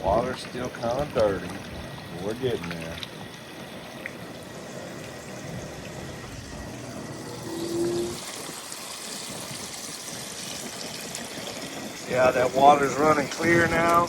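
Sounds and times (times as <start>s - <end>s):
low steady hum: 0.0s - 10.0s
running water pouring: 0.0s - 14.0s.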